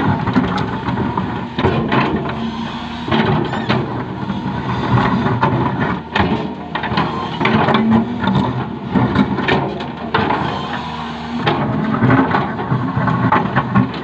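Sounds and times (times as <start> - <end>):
excavator bucket clanking: 0.0 - 14.0
excavator diesel engine under load: 0.0 - 14.0.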